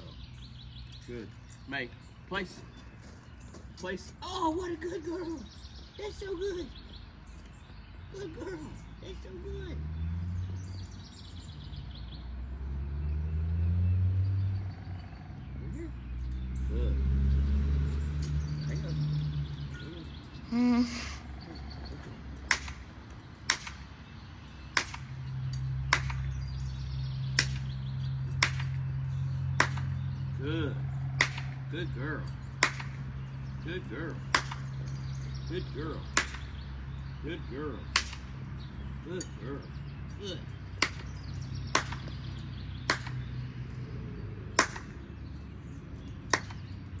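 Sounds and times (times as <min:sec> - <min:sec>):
sharp gunshot-like cracks: 0:22.5 - 0:22.9, 0:23.5 - 0:23.9, 0:31.2 - 0:31.6
sharp ringing cracks: 0:22.5 - 0:24.0, 0:24.7 - 0:30.2, 0:31.0 - 0:33.5, 0:34.2 - 0:35.1, 0:36.1 - 0:36.9, 0:37.9 - 0:38.5, 0:40.6 - 0:43.4, 0:44.6 - 0:45.0.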